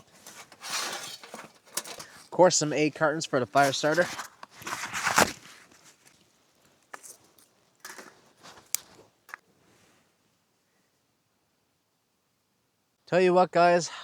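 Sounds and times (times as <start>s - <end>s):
cardboard rustling and tearing: 0.0s - 2.3s, 3.4s - 6.3s
light knocks and crunches: 0.0s - 9.4s.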